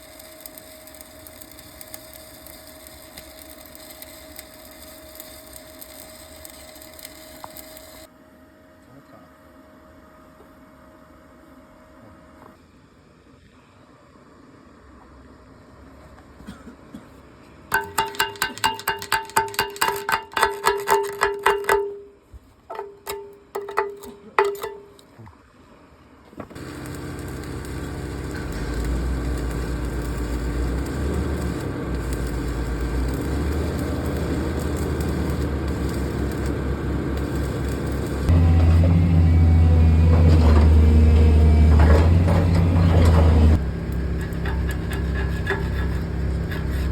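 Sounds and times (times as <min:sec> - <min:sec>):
engine low rumble: 0:26.5 - 0:46.9.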